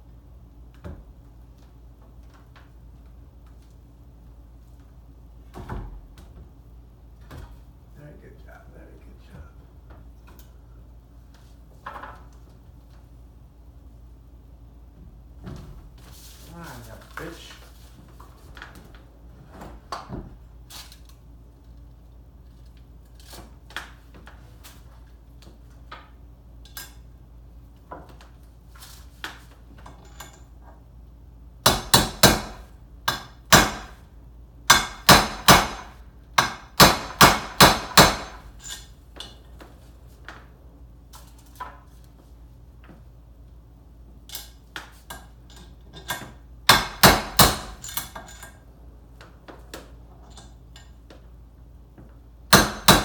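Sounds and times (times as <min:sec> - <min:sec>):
hammer on metal: 0:31.6 - 0:34.0, 0:34.7 - 0:38.4, 0:52.5 - 0:53.0.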